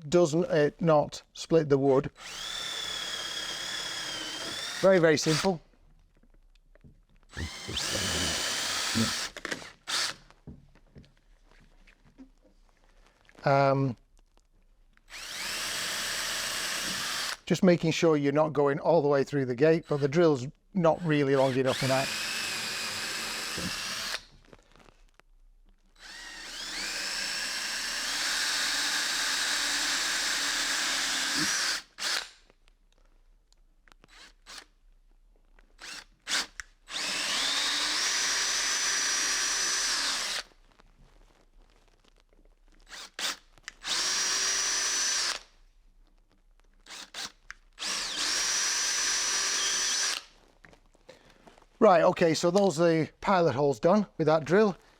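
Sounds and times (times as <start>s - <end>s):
power drill boring into timber: 2.0s - 5.6s, 7.3s - 10.3s, 15.1s - 17.5s, 19.8s - 20.2s, 20.9s - 24.4s, 26.0s - 32.4s, 34.1s - 34.7s, 35.8s - 40.6s, 42.9s - 45.5s, 46.8s - 50.3s
drill trigger blips: 2.1s - 5.6s, 7.3s - 10.2s, 15.1s - 17.5s, 21.0s - 24.3s, 26.0s - 32.4s, 35.8s - 40.5s, 42.9s - 45.5s, 46.9s - 50.3s.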